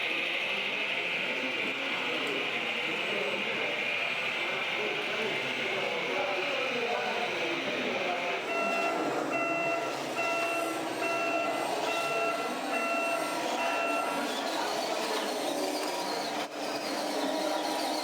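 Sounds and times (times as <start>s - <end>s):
toy truck motor whine: 1.9s - 18.0s
reversing alarm beeping: 8.4s - 14.3s.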